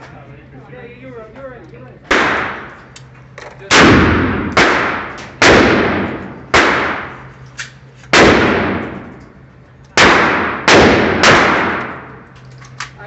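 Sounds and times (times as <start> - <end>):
loud gunshots with echo: 2.1 - 2.8, 3.7 - 7.3, 8.1 - 9.1, 10.0 - 12.1.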